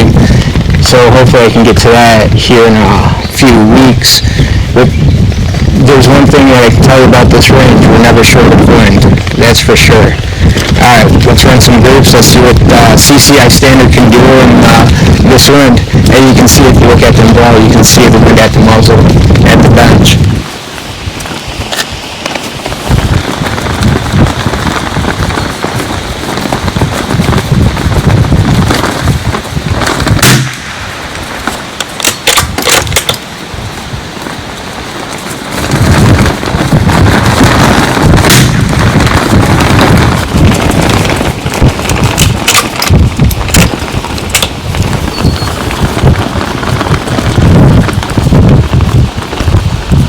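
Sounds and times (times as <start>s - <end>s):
wind buffeting microphone: 0.0s - 50.0s
rifle shots: 30.1s - 31.1s, 38.2s - 39.0s.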